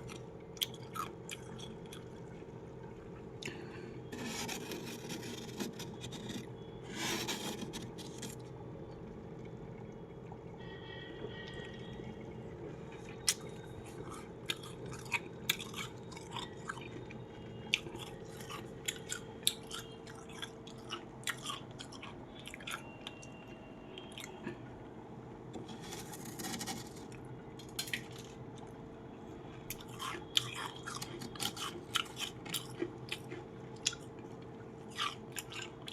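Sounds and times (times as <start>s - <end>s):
frost crunching being chewed: 0.0s - 2.4s, 3.4s - 8.5s, 12.9s - 23.2s, 25.6s - 28.7s, 29.5s - 35.9s
steady low hum: 0.0s - 35.9s.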